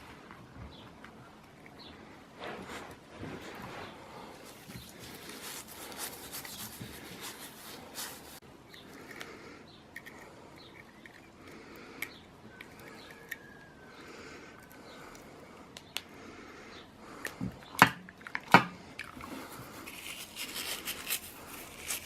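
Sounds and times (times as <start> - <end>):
small splashes and rubbing in water: 3.7 - 8.4.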